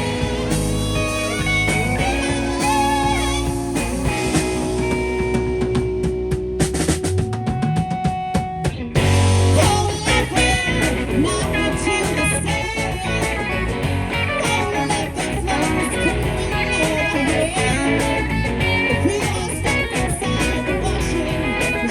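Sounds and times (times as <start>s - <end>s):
drum hits: 0.0s - 12.5s
live rock band playing: 0.0s - 21.9s.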